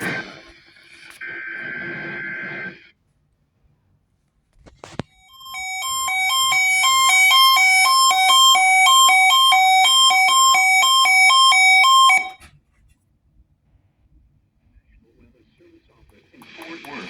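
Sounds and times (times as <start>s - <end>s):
alternating high and low beeping: 5.2s - 12.4s
radio click: 16.4s - 17.0s.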